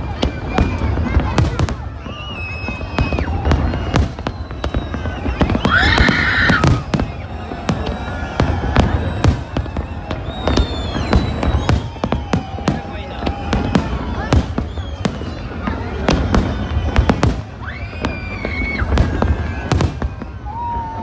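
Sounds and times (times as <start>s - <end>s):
fireworks bangs and crackles: 0.0s - 21.0s
whistling fireworks shells: 0.0s - 21.0s.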